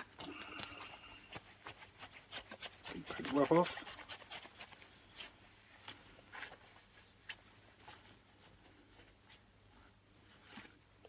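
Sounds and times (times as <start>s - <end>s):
cloth rubbing on steel blade: 0.6s - 8.2s.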